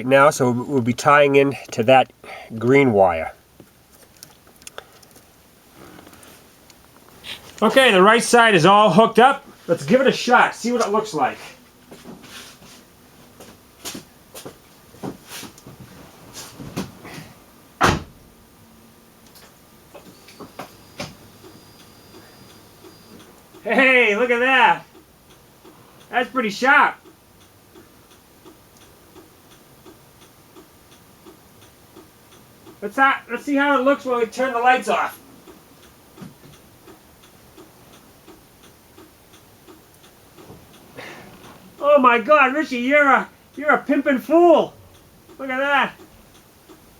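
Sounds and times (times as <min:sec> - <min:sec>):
car door shutting: 0:17.8 - 0:18.2.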